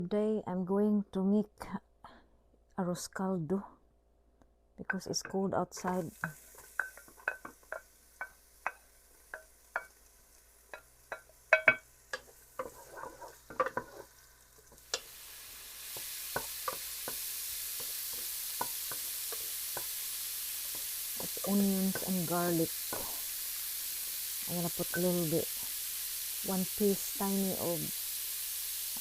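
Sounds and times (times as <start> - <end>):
onions sizzling in hot oil: 5.7 - 29.0
utensils clicking against a pan: 5.8 - 10.0, 10.6 - 14.1, 14.7 - 15.1, 15.9 - 20.0, 20.6 - 23.1, 24.6 - 25.4.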